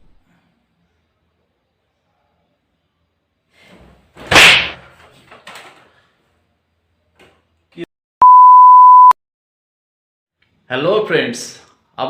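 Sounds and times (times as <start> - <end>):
loud electronic beep tone: 8.2 - 9.2.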